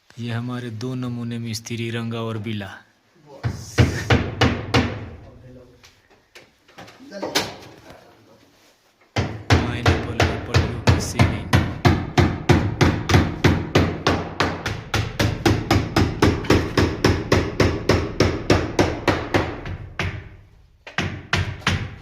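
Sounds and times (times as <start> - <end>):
hammer striking wood: 3.4 - 5.1, 9.1 - 22.0.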